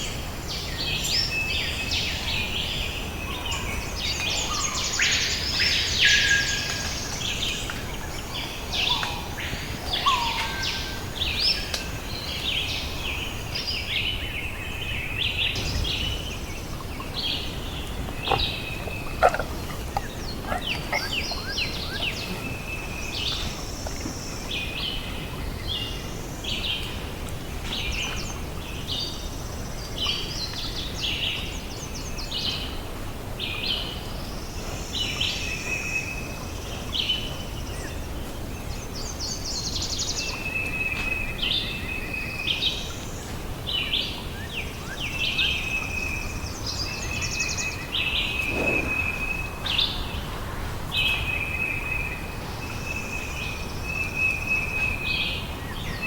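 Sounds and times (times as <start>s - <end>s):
birds chirping and trilling: 14.9s - 25.0s, 43.7s - 52.2s.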